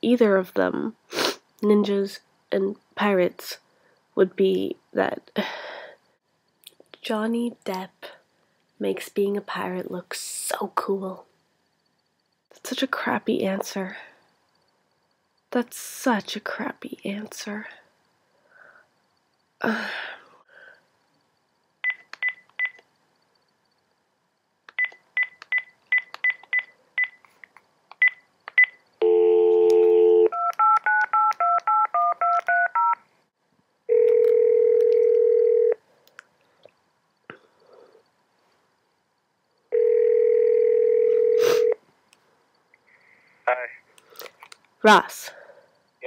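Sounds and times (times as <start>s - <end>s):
telephone dial tone: 29.0s - 33.0s, 33.9s - 35.8s, 39.7s - 41.8s
telephone ringback tone: 29.0s - 33.0s, 33.9s - 35.8s, 39.7s - 41.8s.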